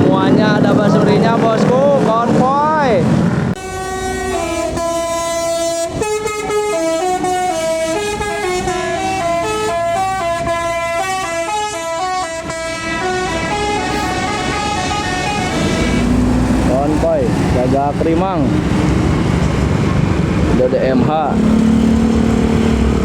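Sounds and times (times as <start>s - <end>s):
bus horn playing a melody: 3.6s - 16.3s.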